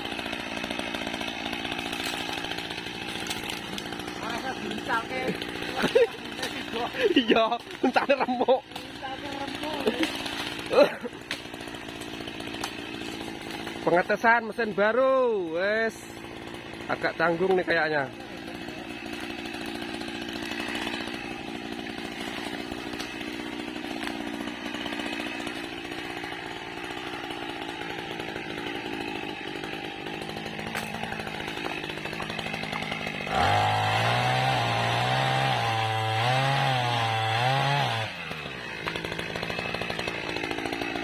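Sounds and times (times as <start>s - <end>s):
small petrol engine revving: 0.0s - 14.2s, 15.8s - 41.0s.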